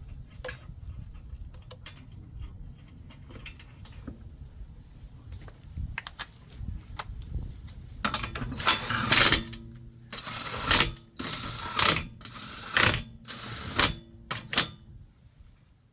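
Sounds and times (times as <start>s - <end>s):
impact wrench bursts: 8.1s - 14.8s.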